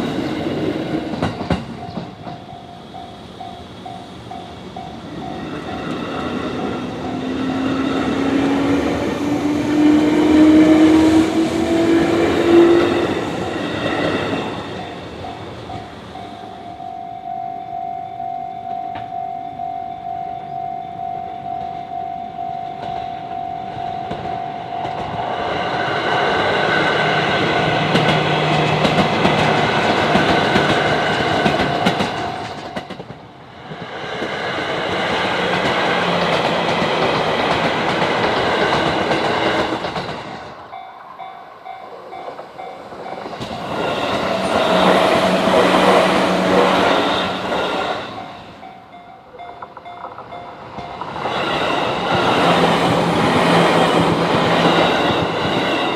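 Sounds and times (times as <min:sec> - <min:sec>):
train wheels clattering on rails: 0:00.0 - 0:16.6, 0:21.5 - 0:55.9
level crossing warning bell: 0:01.7 - 0:08.3, 0:11.8 - 0:26.0, 0:27.4 - 0:33.1, 0:40.5 - 0:55.9.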